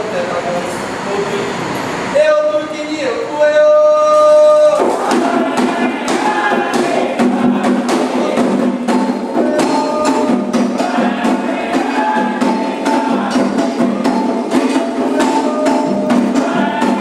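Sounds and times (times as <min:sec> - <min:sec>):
person singing: 0:03.2 - 0:17.0
sharp percussion strikes: 0:04.1 - 0:17.0.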